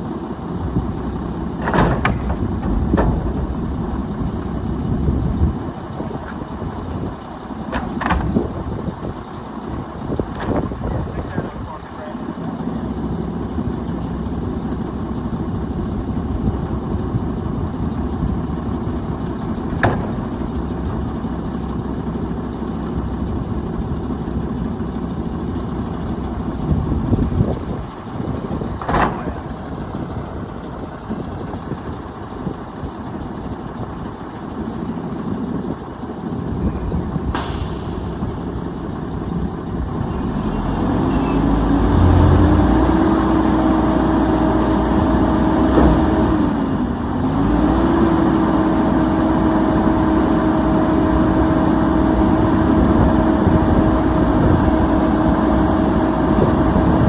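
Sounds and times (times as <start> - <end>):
diesel truck engine running: 0.0 - 57.0
sharp engine knocks: 1.4 - 4.8, 7.6 - 8.8, 10.2 - 10.9, 19.4 - 20.6, 26.5 - 30.0, 45.6 - 46.4.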